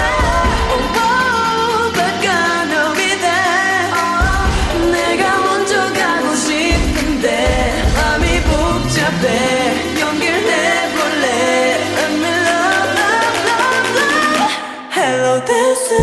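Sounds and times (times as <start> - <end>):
reverb-heavy pop song vocals: 0.0 - 16.0
deep bass: 6.7 - 10.4.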